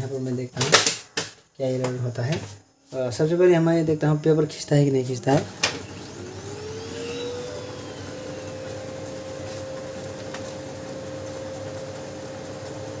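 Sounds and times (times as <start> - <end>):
printer motor whining: 5.2 - 13.0.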